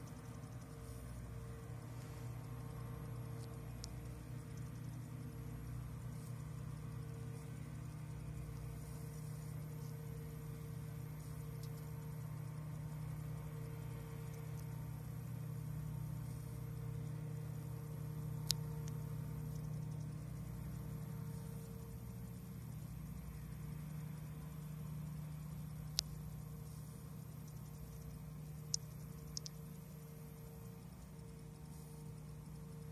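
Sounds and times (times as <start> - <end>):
sharp click: 27.4 - 29.6.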